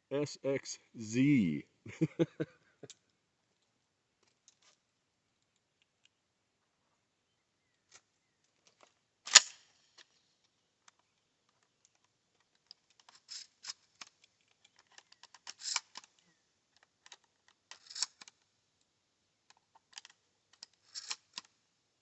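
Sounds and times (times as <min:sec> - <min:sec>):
shotgun shells loading clicks: 0:08.6 - 0:18.5, 0:19.5 - 0:21.6.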